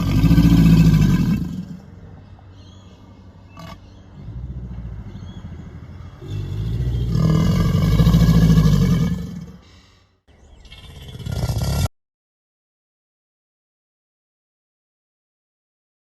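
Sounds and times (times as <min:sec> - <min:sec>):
crocodile growling bellow: 0:00.0 - 0:01.8, 0:06.2 - 0:09.6, 0:10.7 - 0:11.9.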